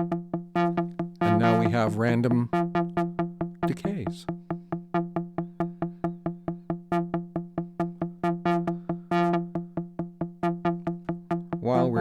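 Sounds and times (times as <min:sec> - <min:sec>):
synthesizer repeating pitched note: 0:01.2 - 0:03.0, 0:11.6 - 0:12.0.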